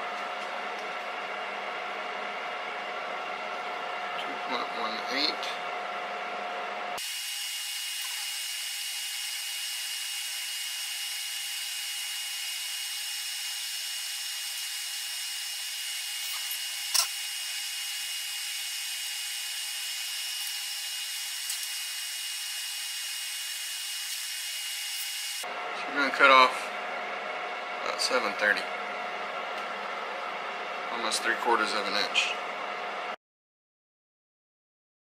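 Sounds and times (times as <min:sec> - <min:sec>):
power tool whining: 0:07.0 - 0:25.4.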